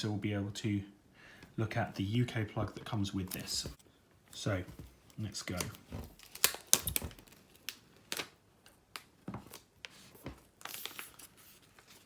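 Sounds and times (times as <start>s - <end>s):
plastic wrap rustling: 4.4s - 8.4s.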